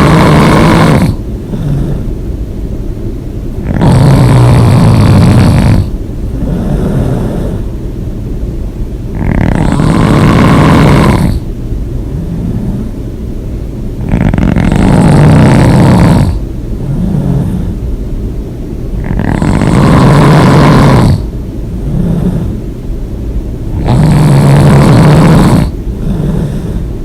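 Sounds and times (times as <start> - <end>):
person snoring: 0.0 - 2.1, 3.6 - 7.7, 9.1 - 11.5, 12.1 - 13.0, 14.0 - 17.8, 19.0 - 22.6, 23.7 - 26.9
quiet breaths: 1.0 - 2.5, 4.0 - 7.9, 9.8 - 13.3, 14.0 - 18.0, 19.0 - 22.9, 23.7 - 27.0.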